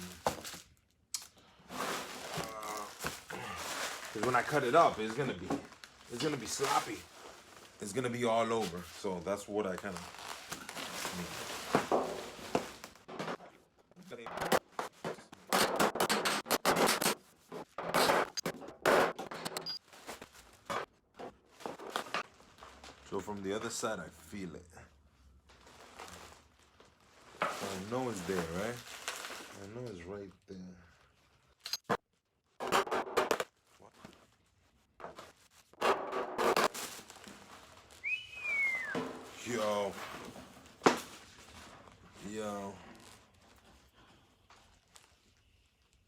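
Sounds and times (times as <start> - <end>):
scraping and rubbing on metal panel: 14.3 - 19.6
knocks on sheet metal: 15.5 - 17.1.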